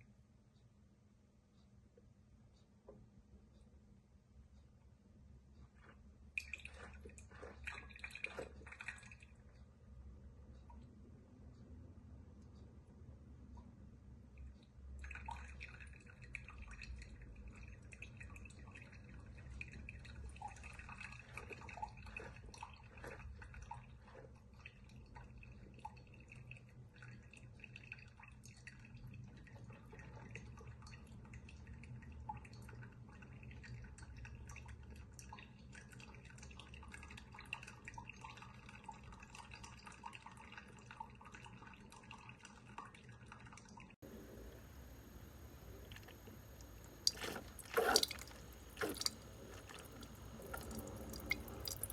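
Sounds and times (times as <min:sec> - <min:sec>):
coffee maker humming: 0:44.0 - 0:51.9
liquid dripping: 0:44.0 - 0:51.9.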